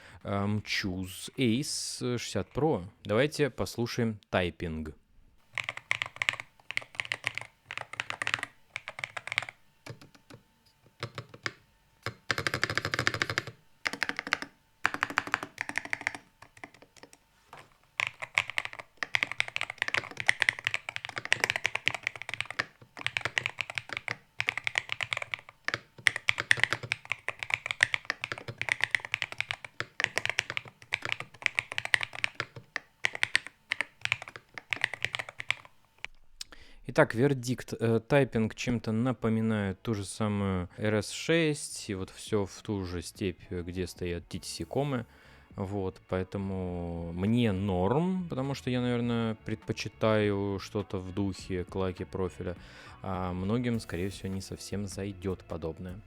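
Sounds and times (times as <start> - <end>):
keyboard stabilizers ticking: 5.5 - 36.1
keyboard typing clacks: 5.5 - 36.1.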